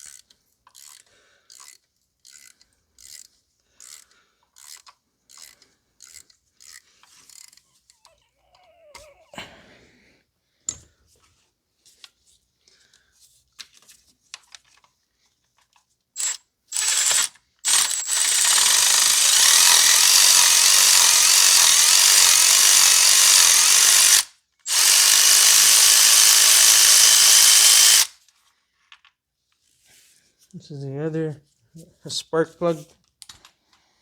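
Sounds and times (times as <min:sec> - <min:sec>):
power tool running: 0:16.2 - 0:28.2.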